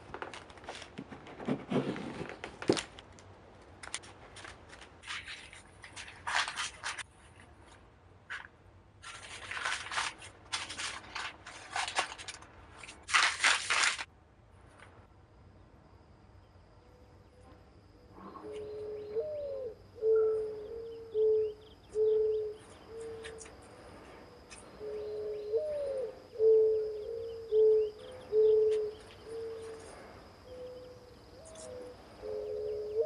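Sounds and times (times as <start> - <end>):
rustling scrapes: 0.0 - 2.9, 4.0 - 14.1
mourning dove cooing: 18.1 - 23.6, 24.2 - 33.0.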